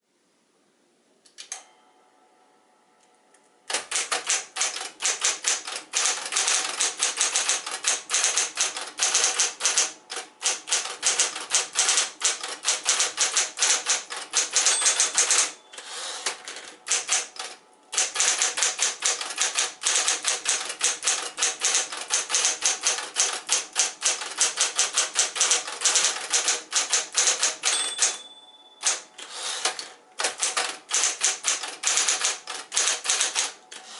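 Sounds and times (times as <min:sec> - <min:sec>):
fast electric typing: 0:03.7 - 0:15.6, 0:16.2 - 0:28.2, 0:28.8 - 0:33.6
typewriter motor humming: 0:03.7 - 0:28.2, 0:28.8 - 0:33.9
typewriter bell ring: 0:03.9 - 0:15.9, 0:24.6 - 0:29.1.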